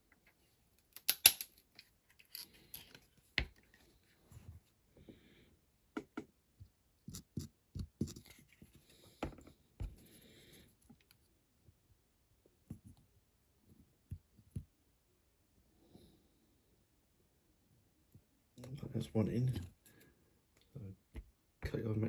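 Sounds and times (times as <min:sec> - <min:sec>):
small tools clicking and tapping: 0:00.9 - 0:03.6.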